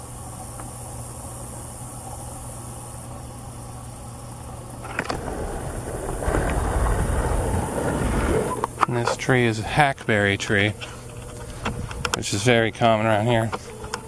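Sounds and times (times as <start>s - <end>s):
low mechanical hum: 0.0s - 14.0s
rough rustling noise: 4.7s - 9.1s.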